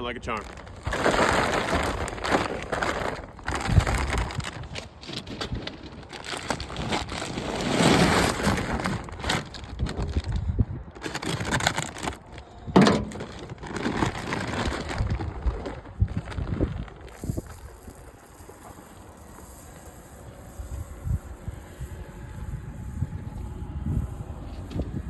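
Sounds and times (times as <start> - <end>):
plastic bag rustling: 0.0 - 25.0.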